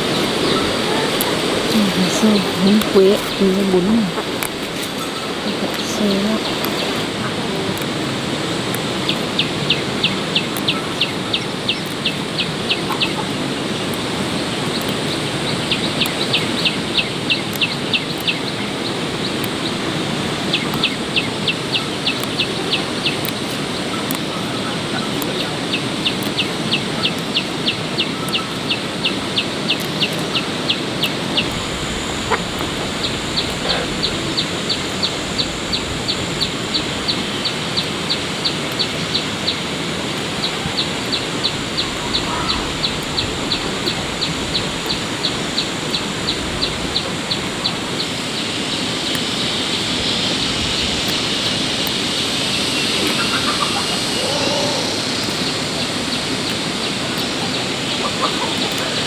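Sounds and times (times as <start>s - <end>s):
steady hiss: 0.0s - 59.0s
chick peeping: 9.0s - 13.4s, 20.5s - 39.6s, 52.4s - 59.0s.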